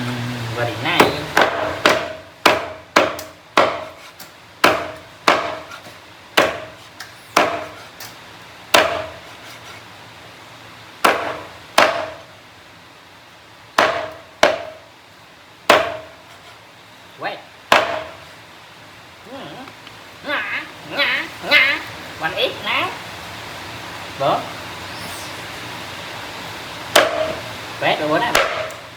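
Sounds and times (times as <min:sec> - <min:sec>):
knife chopping on cutting board: 0:01.0 - 0:08.1, 0:08.7 - 0:09.8, 0:11.0 - 0:12.2, 0:13.8 - 0:14.8, 0:15.7 - 0:16.6, 0:17.7 - 0:18.3, 0:26.9 - 0:27.5, 0:28.3 - 0:28.8.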